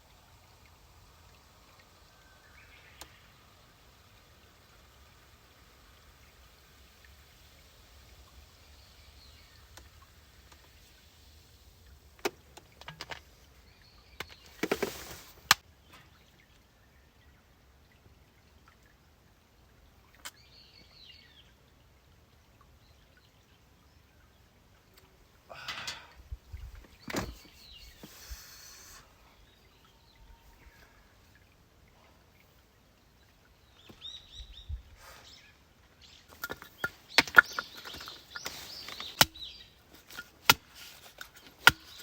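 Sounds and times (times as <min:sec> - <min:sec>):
rustling: 0:14.2 - 0:15.6, 0:36.3 - 0:42.0.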